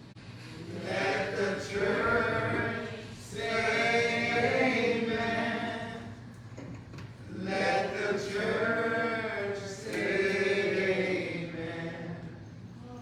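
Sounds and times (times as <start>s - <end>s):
congregation singing: 0.4s - 12.8s.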